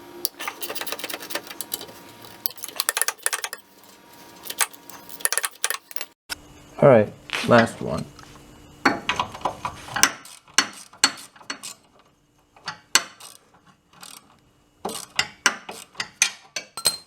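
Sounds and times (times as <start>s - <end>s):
ratchet wrench clicking: 0.3s - 3.6s, 4.4s - 6.1s, 10.2s - 11.8s, 13.0s - 13.4s, 14.0s - 14.3s, 14.9s - 16.0s.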